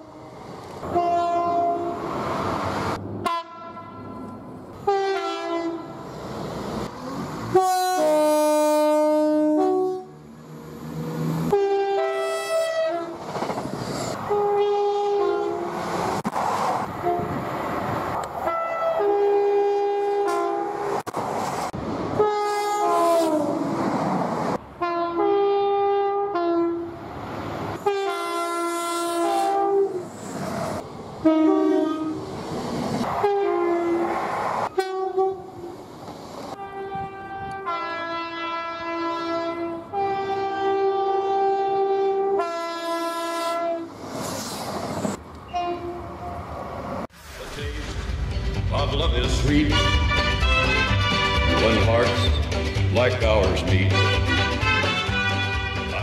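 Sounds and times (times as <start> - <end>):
two-tone train horns: 0.0 - 2.1, 3.2 - 6.0, 7.4 - 10.2, 11.4 - 13.2, 14.2 - 15.8, 17.0 - 17.4, 18.4 - 21.0, 22.2 - 23.8, 24.8 - 27.0, 27.8 - 30.1, 31.2 - 32.2, 33.0 - 34.1, 34.7 - 35.8, 36.5 - 44.0, 45.5 - 46.4, 49.6 - 52.4, 53.3 - 56.0
trains running on track: 0.0 - 56.0.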